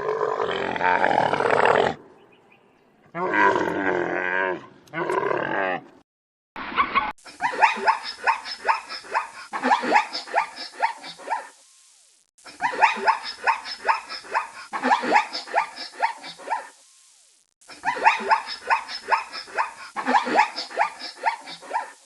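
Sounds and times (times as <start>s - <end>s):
dog barking and yelping: 7.4s - 11.6s, 12.6s - 16.8s, 17.8s - 22.0s.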